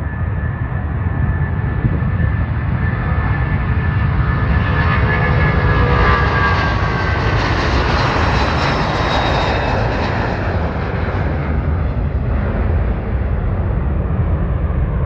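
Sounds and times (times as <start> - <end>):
jet engines passing: 0.0 - 15.0
steady low rumble: 0.0 - 15.0.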